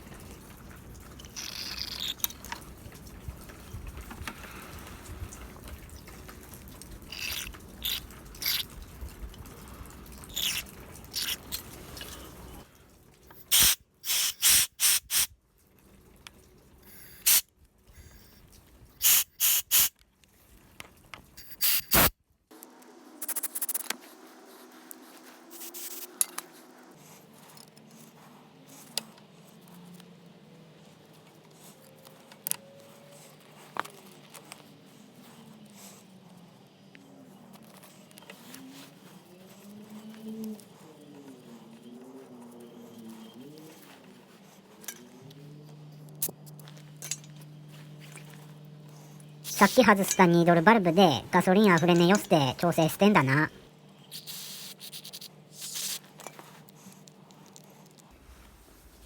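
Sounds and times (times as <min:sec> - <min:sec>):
spray bursts from nozzle: 0:13.4 - 0:15.3, 0:16.9 - 0:17.4, 0:19.0 - 0:19.9, 0:21.4 - 0:22.1, 0:25.5 - 0:26.1, 0:54.1 - 0:56.0.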